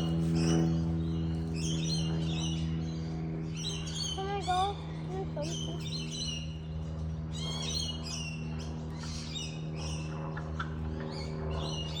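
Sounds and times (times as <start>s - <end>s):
small birds chirping: 0.0s - 12.0s
steady low hum: 0.0s - 12.0s.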